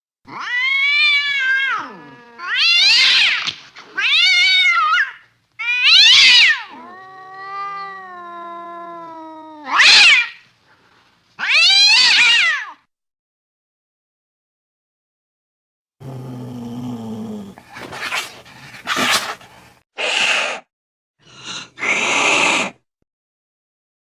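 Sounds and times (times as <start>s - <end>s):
angry cat yowling: 0.3s - 3.4s, 4.0s - 10.4s, 11.4s - 12.8s.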